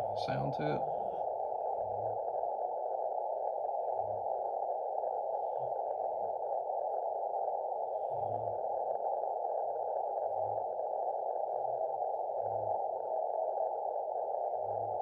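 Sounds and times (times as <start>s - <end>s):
receiver hiss: 0.0s - 15.0s.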